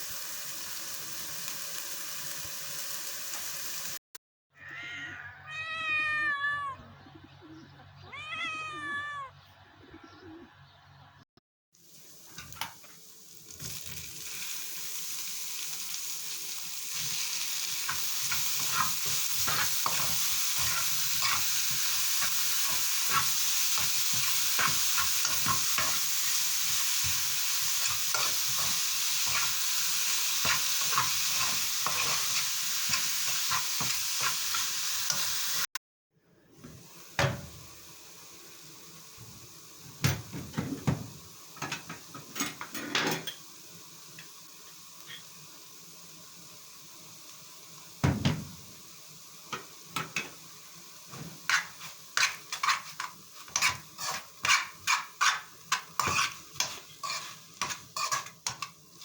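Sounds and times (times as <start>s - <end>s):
food sizzling in a pan: 0.0s - 4.0s, 11.8s - 35.7s, 36.6s - 59.0s
utensil scraping a pan: 17.8s - 35.2s, 51.4s - 59.0s.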